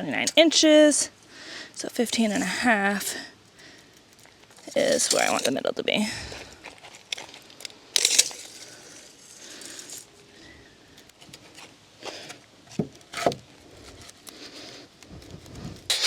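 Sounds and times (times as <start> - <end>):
short scraping rush: 15.7 - 16.0.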